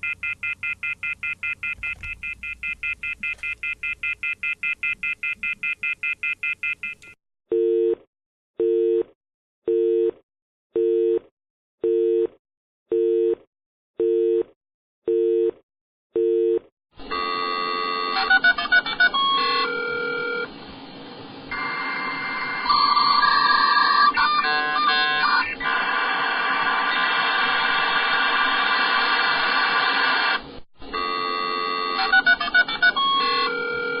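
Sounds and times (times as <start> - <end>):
electronic phone tune: 0.0 - 7.0, 17.1 - 20.5, 21.5 - 25.5, 30.9 - 34.0
electronic phone ringing trill: 17.1 - 20.5, 31.0 - 34.0.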